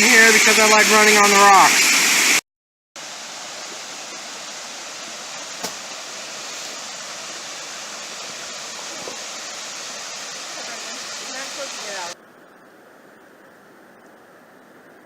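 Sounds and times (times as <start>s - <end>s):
waterfall rushing: 0.0s - 2.4s, 3.0s - 12.2s.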